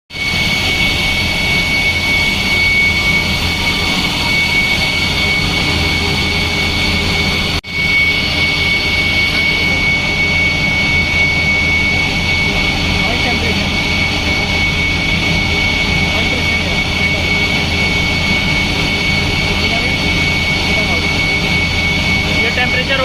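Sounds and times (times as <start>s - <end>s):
chiller machine drone with whine: 0.1s - 23.0s.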